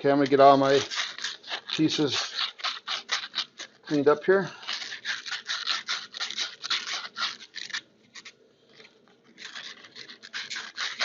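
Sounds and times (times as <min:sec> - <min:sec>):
abrasive scrubbing copper pipe: 0:00.0 - 0:08.3, 0:09.3 - 0:11.0.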